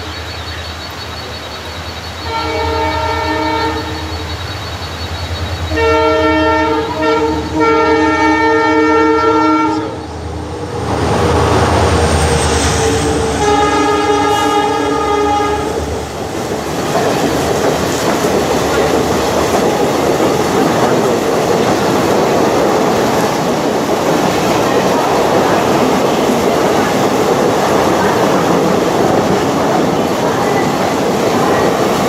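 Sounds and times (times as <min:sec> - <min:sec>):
train passing rush and clatter: 0:00.0 - 0:32.0
locomotive chime horn blasts: 0:02.2 - 0:04.3, 0:05.7 - 0:10.0, 0:12.8 - 0:15.8.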